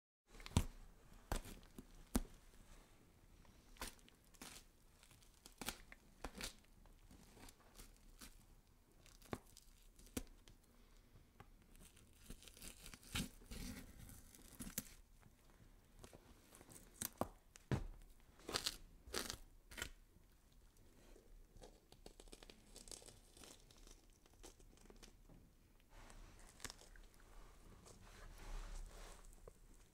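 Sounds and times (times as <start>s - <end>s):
flesh tearing and crunching: 3.8s - 6.7s, 11.8s - 15.0s, 18.4s - 20.0s, 21.6s - 25.1s, 26.5s - 27.2s.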